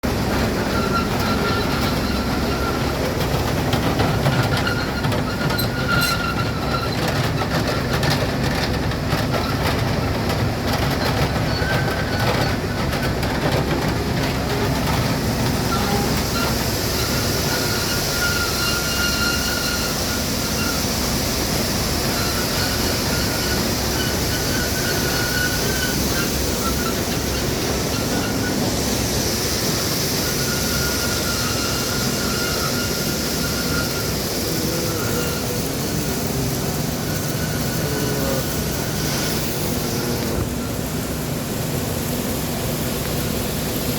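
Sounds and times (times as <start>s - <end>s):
grain dryer mechanical din: 0.0s - 43.9s
faint high squeal: 15.6s - 20.9s, 22.1s - 28.8s, 30.1s - 36.4s.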